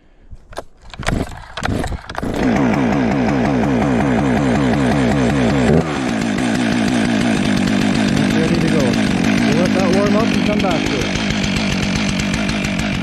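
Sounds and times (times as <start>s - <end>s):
starter cord pulls: 0.5s - 3.0s
chainsaw engine running: 1.1s - 13.0s.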